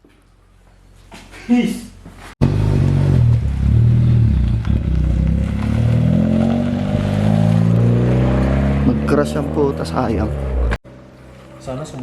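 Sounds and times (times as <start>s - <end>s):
car engine revving: 2.4s - 11.0s.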